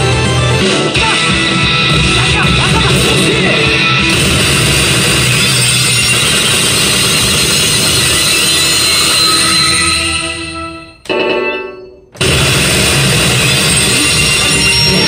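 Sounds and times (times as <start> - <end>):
heavy rock music with electric guitar: 0.0 - 10.6.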